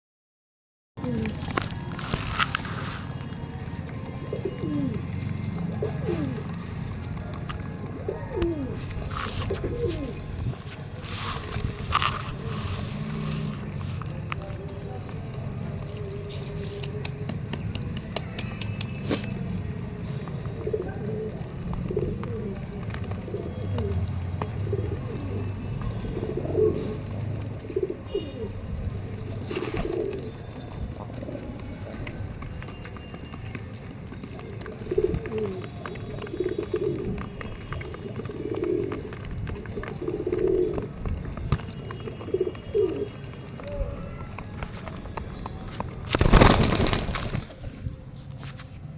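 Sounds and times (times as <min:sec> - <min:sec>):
pigeons cooing: 0:01.0 - 0:02.7, 0:04.0 - 0:15.0, 0:20.5 - 0:32.2, 0:34.3 - 0:41.2, 0:42.0 - 0:44.2.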